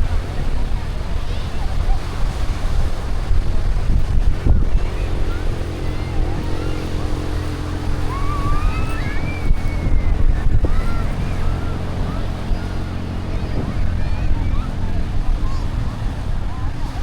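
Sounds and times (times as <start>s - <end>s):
engine hum: 0.0s - 17.0s
wind rumbling on microphone: 0.0s - 17.0s.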